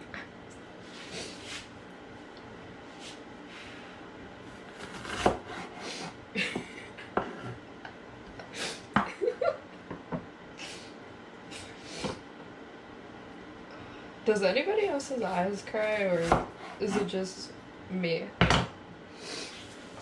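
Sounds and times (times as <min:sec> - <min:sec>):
knife chopping on cutting board: 0:04.8 - 0:05.7.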